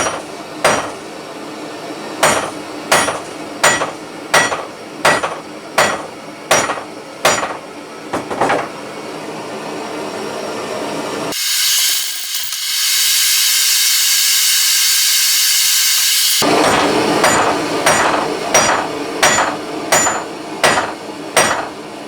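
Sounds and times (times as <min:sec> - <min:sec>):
hammer striking hot metal: 0:00.0 - 0:01.0, 0:02.2 - 0:07.6, 0:11.3 - 0:21.8.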